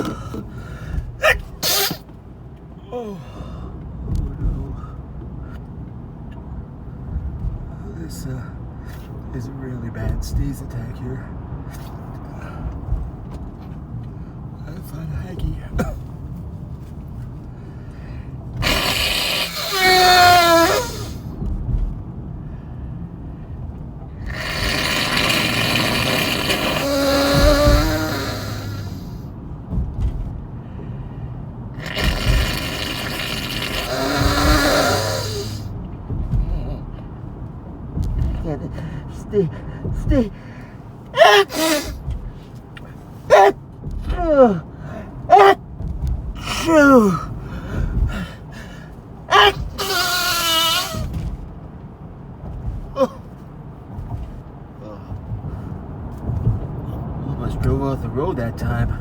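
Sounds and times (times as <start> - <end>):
gasping breaths: 0.0 - 2.0, 17.6 - 21.3, 24.2 - 29.3, 31.8 - 37.0, 38.2 - 45.6, 46.3 - 51.2
car rumble on road: 0.0 - 59.0
man sneezing: 1.2 - 2.0, 18.6 - 21.2, 24.3 - 29.1, 31.8 - 35.6, 41.2 - 42.1, 43.3 - 43.6, 49.3 - 51.1
person blowing nose: 1.2 - 2.0, 18.6 - 21.2, 24.2 - 29.2, 31.8 - 35.7, 41.2 - 42.2, 49.3 - 51.2.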